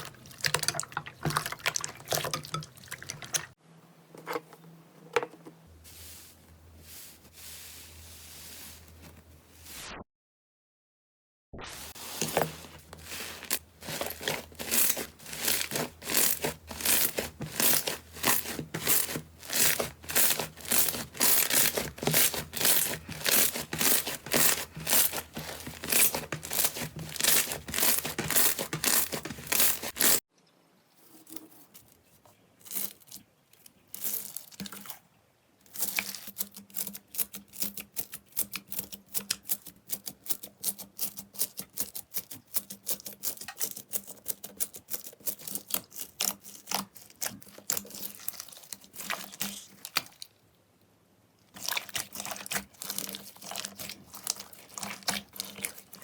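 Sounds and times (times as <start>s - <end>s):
faint handling: 12.0s - 30.2s.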